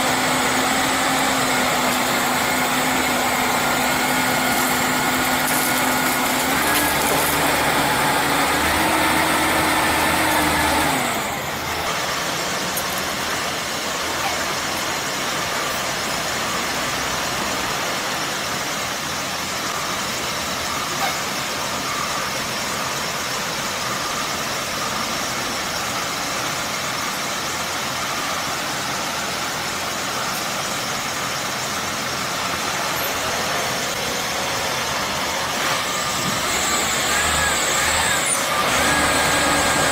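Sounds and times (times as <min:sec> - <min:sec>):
small engine running: 0:00.0 - 0:15.7, 0:31.7 - 0:39.9.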